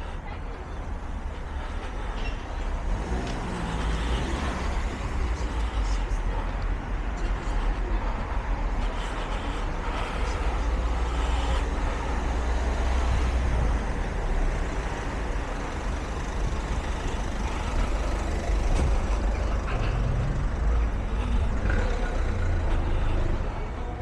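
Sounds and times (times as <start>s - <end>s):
low engine rumble of traffic: 0.0s - 24.0s
tyre and road noise: 0.0s - 24.0s.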